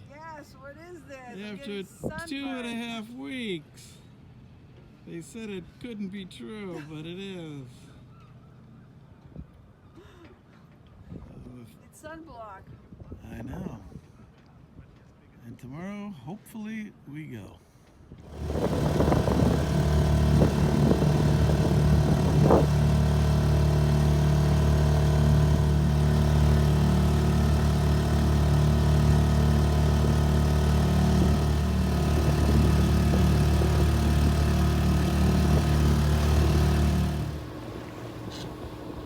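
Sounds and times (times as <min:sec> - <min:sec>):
boat engine droning: 0:18.2 - 0:39.0.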